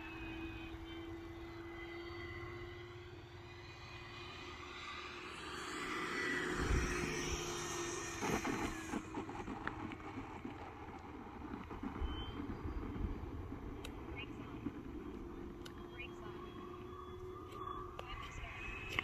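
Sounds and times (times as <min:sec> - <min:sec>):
model aircraft motor hum: 0:00.0 - 0:19.0
wind rumbling on microphone: 0:06.4 - 0:19.0.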